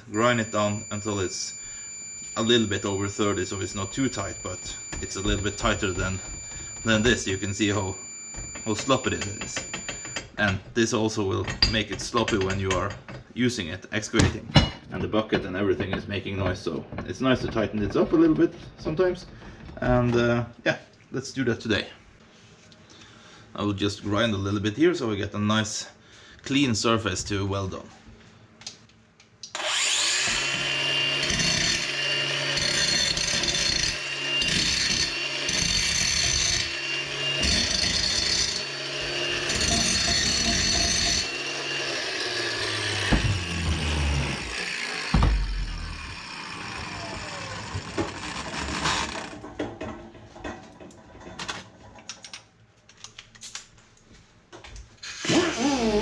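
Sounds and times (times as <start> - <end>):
grinder winding down whine: 0.0 - 10.3, 29.5 - 49.5, 55.0 - 56.0
power grinder grinding steel: 0.1 - 10.2, 29.5 - 49.4.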